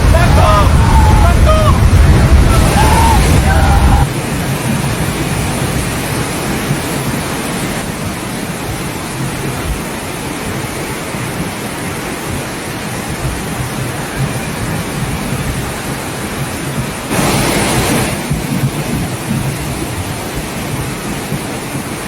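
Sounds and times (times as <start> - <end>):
low rumble: 0.0 - 5.8
water rushing: 0.0 - 22.0.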